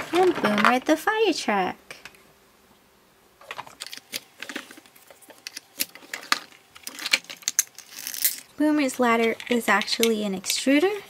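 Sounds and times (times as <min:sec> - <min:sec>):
plastic toy pieces clicking: 0:05.4 - 0:08.4, 0:09.2 - 0:10.7.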